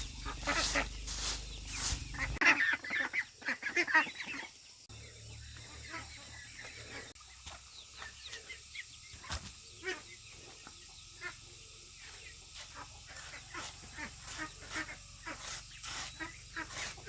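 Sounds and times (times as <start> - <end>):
farm birds calling: 0.0 - 17.0.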